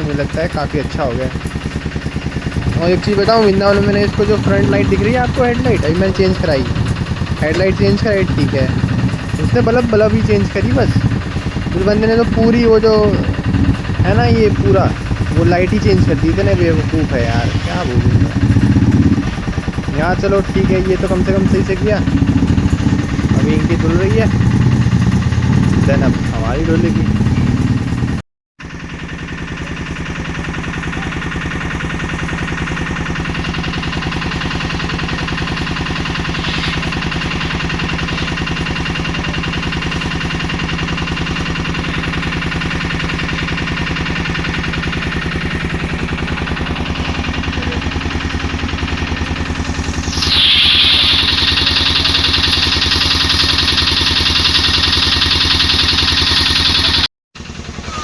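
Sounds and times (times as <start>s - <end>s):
hissing water jet spraying: 0.0s - 28.2s, 34.4s - 40.3s, 49.4s - 57.0s
pressure washer pump humming: 0.0s - 28.2s, 28.8s - 58.0s.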